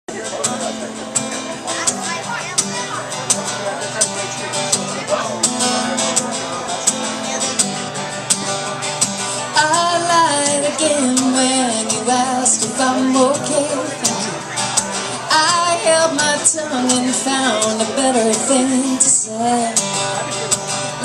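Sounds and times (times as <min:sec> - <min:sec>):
guitar strumming: 0:00.1 - 0:21.0
woman singing: 0:09.5 - 0:14.4, 0:15.3 - 0:19.9.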